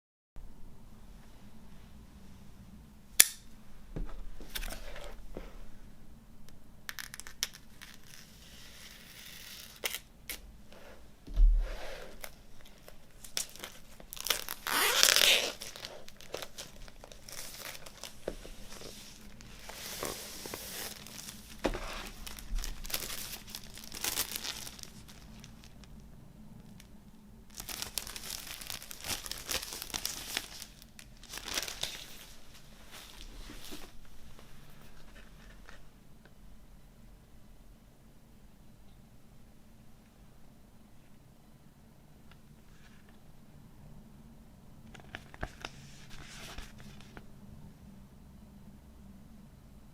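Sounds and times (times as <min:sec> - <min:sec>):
packaging tearing and crinkling: 0:12.2 - 0:25.8, 0:27.5 - 0:32.2.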